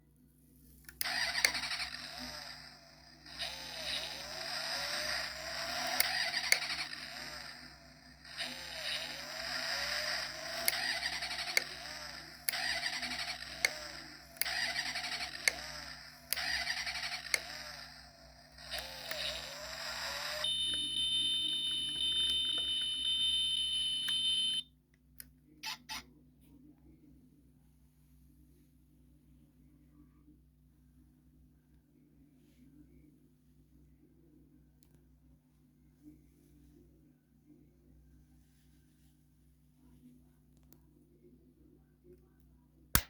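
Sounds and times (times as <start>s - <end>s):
toy car whirring scrape with clicks: 0.8s - 24.6s
short blips: 3.3s - 24.6s
steady high whine: 15.3s - 24.6s.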